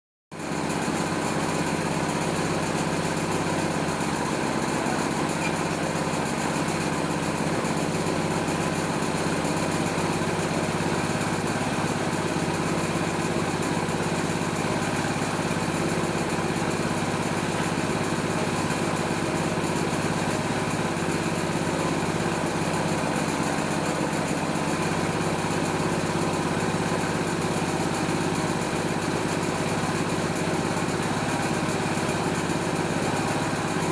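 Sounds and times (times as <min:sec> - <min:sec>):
small petrol engine running steadily: 0:00.3 - 0:33.9.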